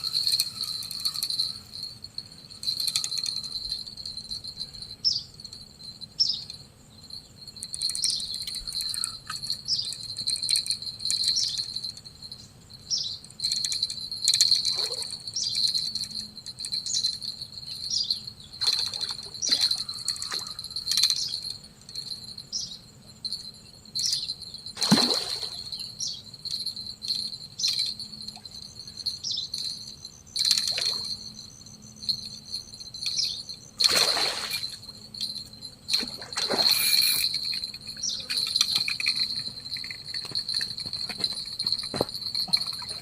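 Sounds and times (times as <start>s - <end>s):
insects buzzing: 0.0s - 43.0s.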